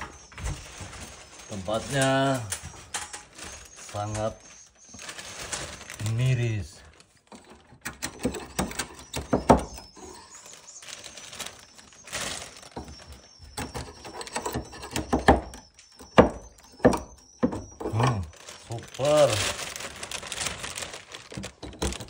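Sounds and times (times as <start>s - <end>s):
high twittering bird chirps: 0.0s - 6.6s, 8.0s - 21.0s
scraper knocking and scraping wood: 11.2s - 22.0s.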